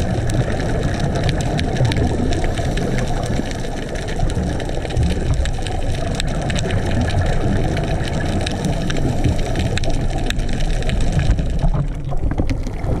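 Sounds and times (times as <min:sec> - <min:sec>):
reef clicks and crackles: 0:00.0 - 0:13.0
underwater rush: 0:00.0 - 0:13.0.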